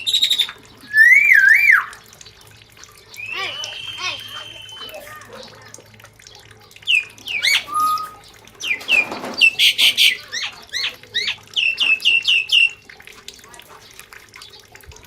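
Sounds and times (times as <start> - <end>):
birds whistling: 0.0 - 2.1, 3.2 - 5.2, 6.8 - 12.8
bird squawking harshly: 7.3 - 8.2.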